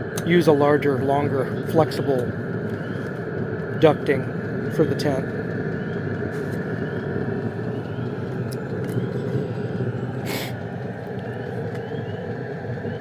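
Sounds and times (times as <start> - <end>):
heater blower whirring: 0.0 - 13.0.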